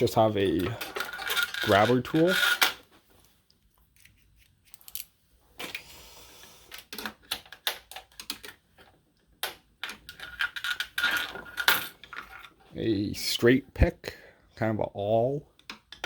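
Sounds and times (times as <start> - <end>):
metal hand tools clinking: 0.2 - 2.8.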